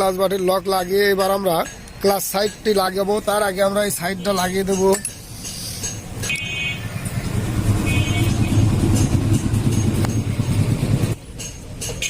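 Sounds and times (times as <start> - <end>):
vehicle engine running: 6.0 - 11.4.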